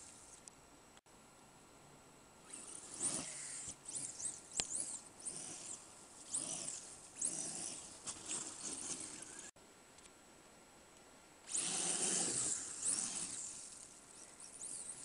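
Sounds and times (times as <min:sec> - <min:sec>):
electric motor whining: 0:02.4 - 0:09.6, 0:11.5 - 0:15.0.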